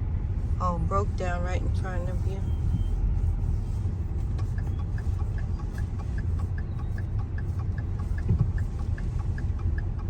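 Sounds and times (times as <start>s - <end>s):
car road and engine rumble: 0.0s - 10.0s
indicator ticking: 4.2s - 10.0s.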